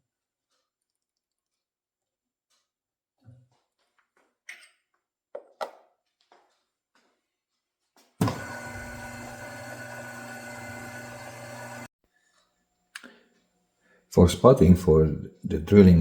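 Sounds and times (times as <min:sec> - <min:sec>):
milling machine motor humming: 0:08.2 - 0:11.9.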